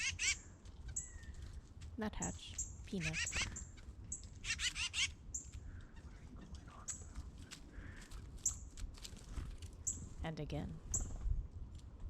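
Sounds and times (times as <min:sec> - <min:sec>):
harsh bird chattering: 0:00.0 - 0:00.4, 0:02.5 - 0:05.1.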